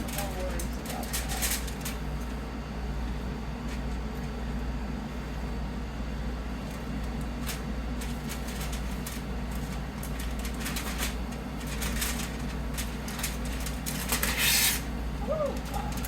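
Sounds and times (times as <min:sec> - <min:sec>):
aluminium foil crinkling: 0:00.0 - 0:02.3, 0:06.7 - 0:16.0.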